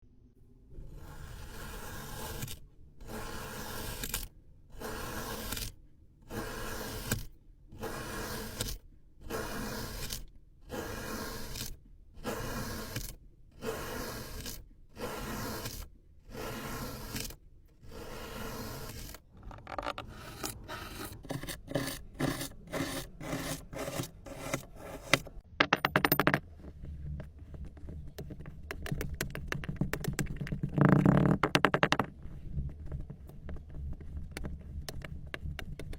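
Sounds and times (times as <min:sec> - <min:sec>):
kinetic sand being cut: 0:07.8 - 0:08.7, 0:09.3 - 0:13.0, 0:13.6 - 0:17.2, 0:20.6 - 0:25.3.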